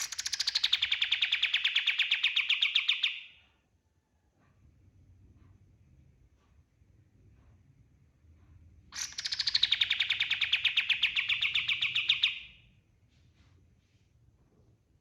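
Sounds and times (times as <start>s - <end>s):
songbird trilling: 0.0s - 3.3s, 9.0s - 12.6s.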